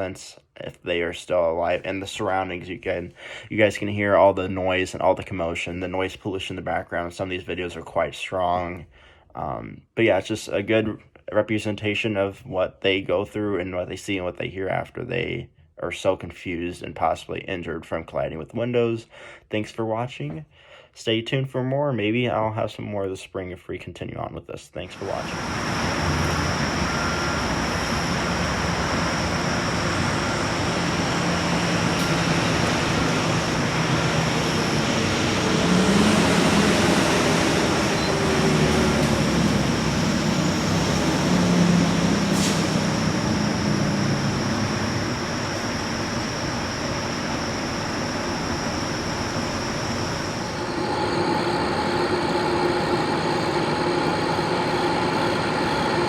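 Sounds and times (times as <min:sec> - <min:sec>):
high-pitched mechanical tone: 0:24.9 - 0:56.0
low mechanical hums: 0:24.9 - 0:56.0.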